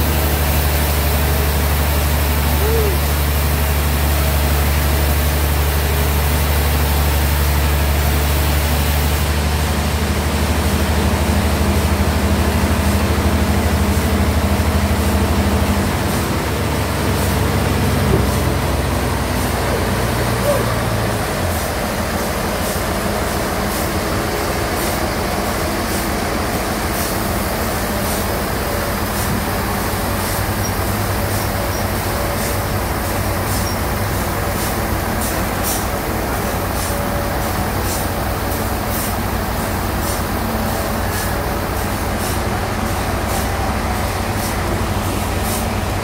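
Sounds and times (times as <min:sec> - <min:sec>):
pulsing high hiss: 0:00.0 - 0:09.2.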